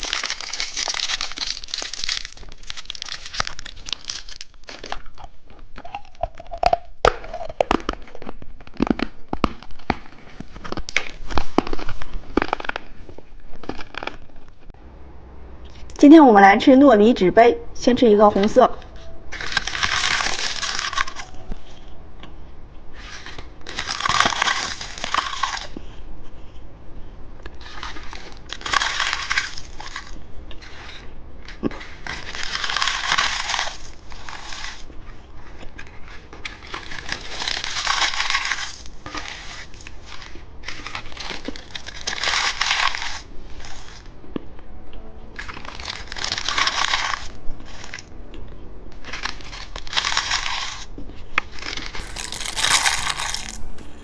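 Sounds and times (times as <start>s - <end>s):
crunchy candy being bitten and chewed: 0.0s - 14.6s, 19.0s - 21.9s, 23.0s - 26.1s, 27.4s - 44.5s, 45.3s - 54.0s.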